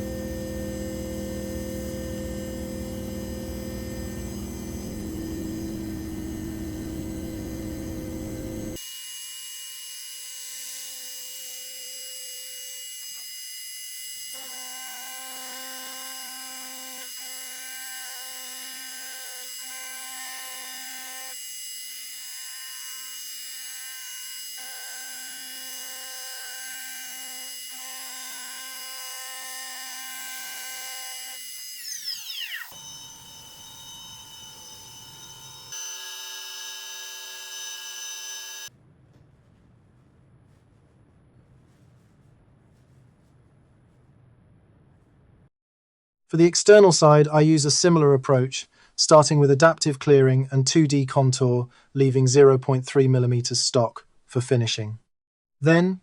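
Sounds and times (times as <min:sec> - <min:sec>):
spindle whining while milling metal: 0:00.0 - 0:38.7.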